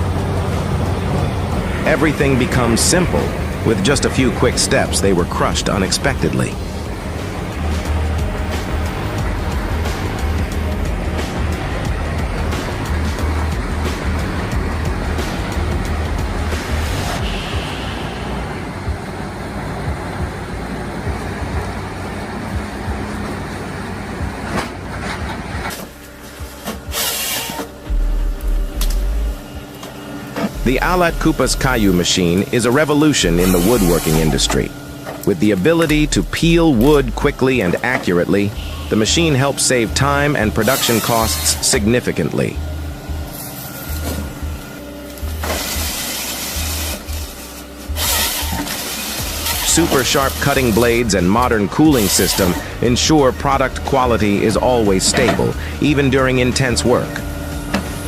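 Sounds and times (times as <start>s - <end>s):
hissing mechanical noise: 0.0s - 58.0s
music with repeating bass beat: 5.4s - 19.0s, 27.7s - 29.9s, 30.5s - 32.3s, 33.2s - 34.9s, 35.9s - 37.6s, 38.5s - 40.6s, 41.3s - 58.0s
grinder crushing wood: 33.3s - 34.8s, 45.2s - 52.8s.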